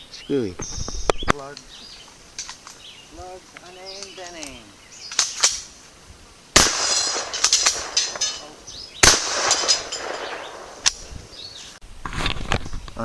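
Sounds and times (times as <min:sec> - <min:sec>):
shotgun shots with rolling echo: 0:06.6 - 0:11.1.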